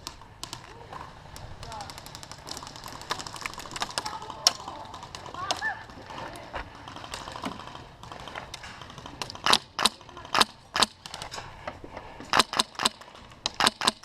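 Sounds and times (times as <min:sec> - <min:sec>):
airsoft gun shots: 0:09.4 - 0:11.1, 0:12.3 - 0:14.0.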